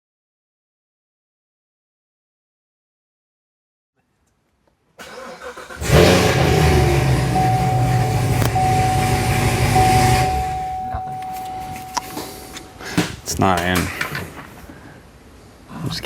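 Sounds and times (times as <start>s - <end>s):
car engine cranking: 5.0s - 12.7s
car engine idling: 5.5s - 12.8s.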